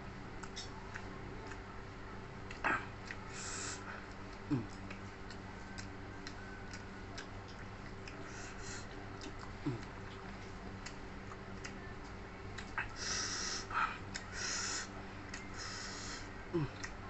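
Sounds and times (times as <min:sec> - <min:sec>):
low electrical hum: 0:00.0 - 0:17.0
wet chewing clicks and smacks: 0:00.3 - 0:17.0
nose sniffs: 0:13.0 - 0:13.7.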